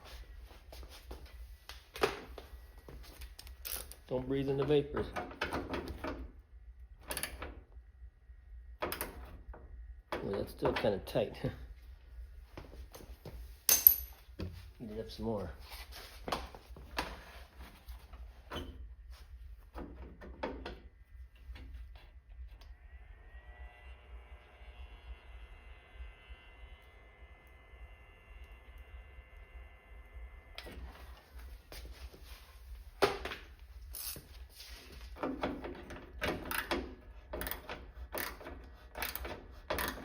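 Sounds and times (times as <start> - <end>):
metal parts and tools clicking: 3.2 - 4.1
induction heater high whine: 20.8 - 40.0
tool clicking and rasping: 36.4 - 40.0.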